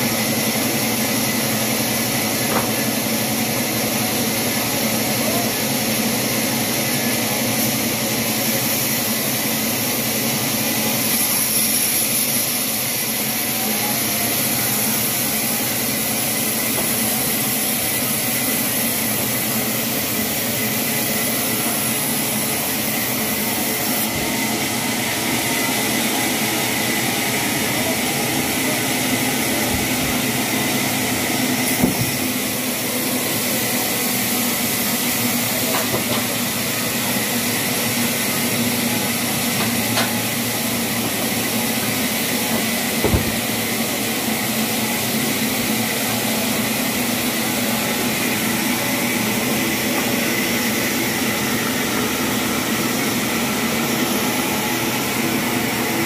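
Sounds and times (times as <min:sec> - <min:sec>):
machinery noise with hiss: 0:00.0 - 0:56.0
sharp knocks: 0:43.0 - 0:43.4.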